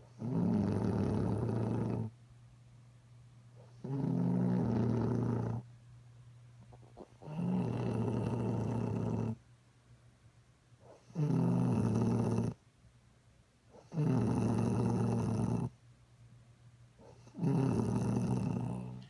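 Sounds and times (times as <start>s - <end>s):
person snoring: 0.2s - 2.1s, 3.8s - 5.6s, 7.2s - 9.4s, 11.0s - 12.6s, 13.8s - 15.7s, 17.2s - 19.0s.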